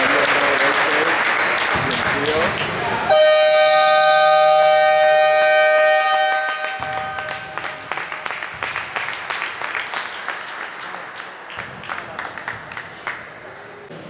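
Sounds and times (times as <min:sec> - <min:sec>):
crowd clapping: 0:00.0 - 0:03.1, 0:04.0 - 0:13.5
scoreboard horn blaring: 0:03.1 - 0:08.3.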